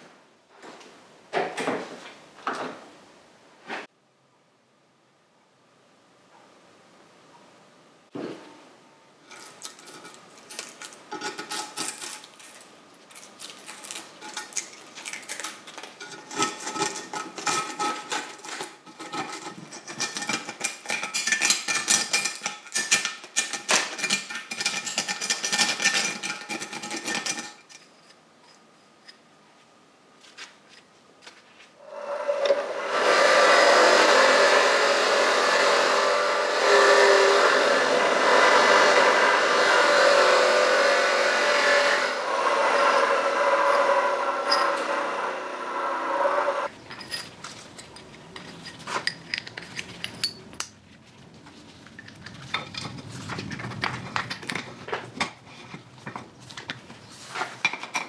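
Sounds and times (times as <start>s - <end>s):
power tool running: 31.9s - 46.7s
metal parts clinking: 46.8s - 50.7s.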